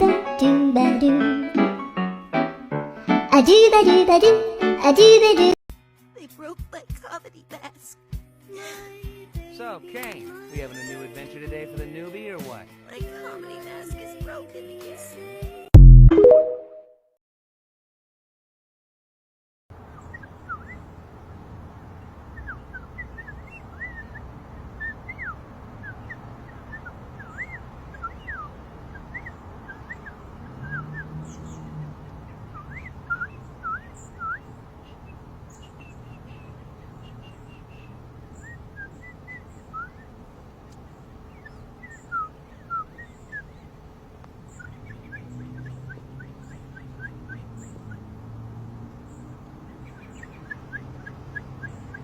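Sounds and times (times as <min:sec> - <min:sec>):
bird-like chirping: 0:19.8 - 0:21.3, 0:21.9 - 0:52.0.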